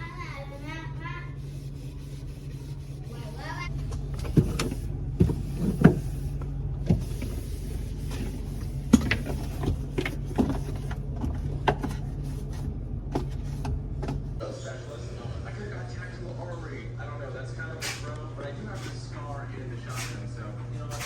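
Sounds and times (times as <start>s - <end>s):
steady low hum: 0.0s - 21.0s
objects knocking and clunking: 8.1s - 14.4s.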